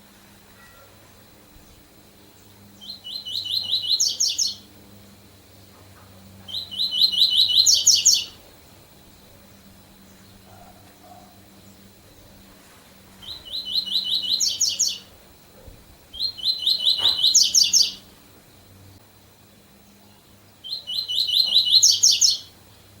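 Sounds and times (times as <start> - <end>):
bird singing fast chirps: 2.8 - 4.6, 6.5 - 8.4, 13.2 - 15.1, 16.2 - 18.1, 20.6 - 22.5.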